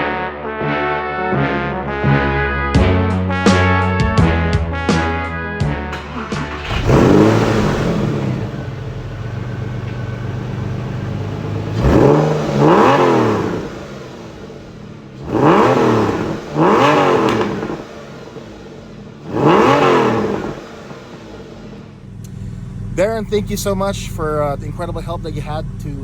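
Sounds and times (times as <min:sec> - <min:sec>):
car engine revving: 0:05.9 - 0:26.0.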